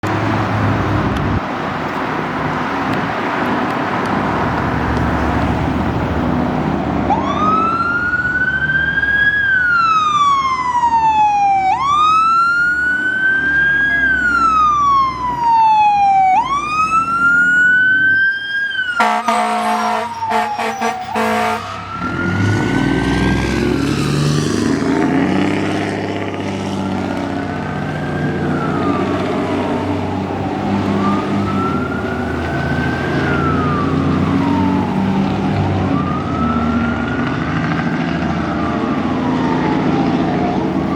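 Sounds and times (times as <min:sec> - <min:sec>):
truck engine rumble: 0:00.0 - 0:40.9
fire truck siren wailing: 0:00.1 - 0:40.9
air horn blasts: 0:19.0 - 0:21.8.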